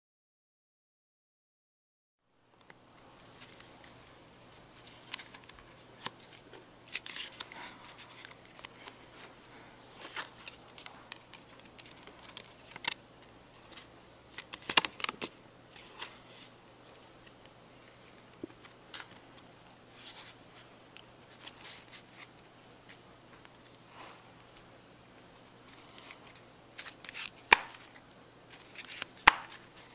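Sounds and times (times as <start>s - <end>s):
playing cards shuffling and snapping: 4.8s - 9.0s, 13.7s - 16.2s, 25.7s - 29.9s.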